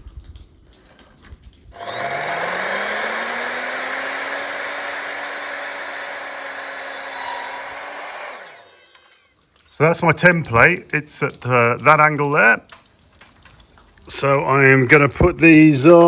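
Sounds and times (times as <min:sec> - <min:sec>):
electric saw cutting wood: 0:01.8 - 0:09.3.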